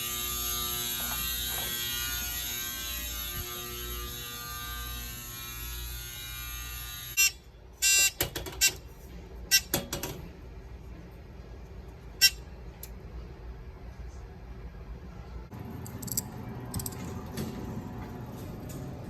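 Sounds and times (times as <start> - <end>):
fire alarm horn buzzing: 0.0 - 8.2.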